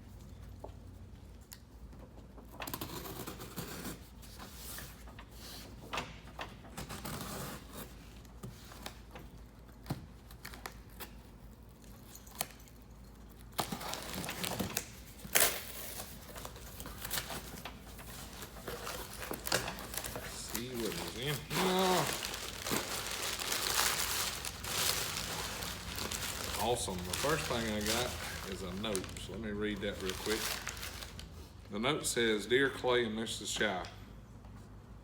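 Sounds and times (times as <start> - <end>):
packaging tearing and rustling: 13.4 - 31.5.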